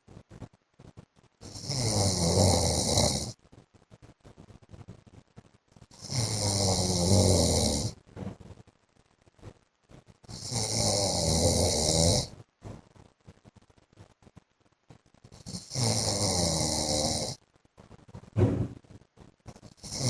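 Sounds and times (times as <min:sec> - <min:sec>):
man snoring: 0:01.4 - 0:03.4, 0:06.0 - 0:08.0, 0:10.3 - 0:12.3, 0:15.4 - 0:17.4, 0:19.7 - 0:20.0.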